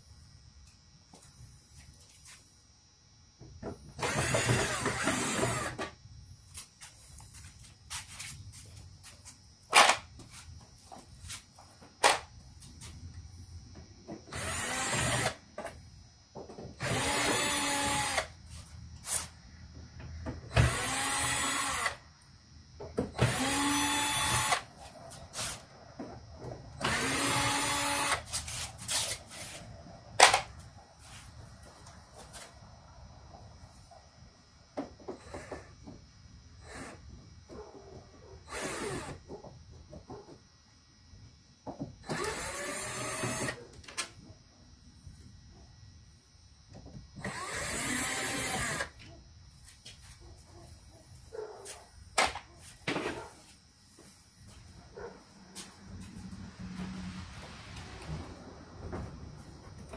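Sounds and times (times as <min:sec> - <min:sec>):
power drill whining: 0:04.0 - 0:05.9, 0:14.3 - 0:15.4, 0:16.8 - 0:18.3, 0:20.5 - 0:22.0, 0:23.2 - 0:24.6, 0:26.8 - 0:28.2, 0:38.5 - 0:39.2, 0:42.0 - 0:43.6, 0:47.2 - 0:49.0.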